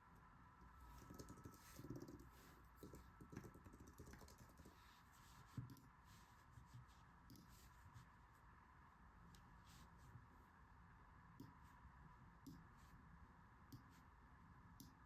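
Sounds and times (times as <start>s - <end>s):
keyboard typing: 1.0s - 4.7s.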